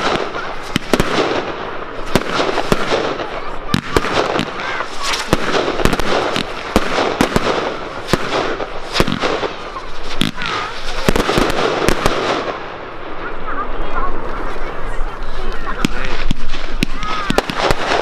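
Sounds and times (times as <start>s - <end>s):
fireworks bangs: 0.0s - 18.0s
fireworks crackling: 0.0s - 18.0s
fireworks whistle: 3.7s - 7.3s.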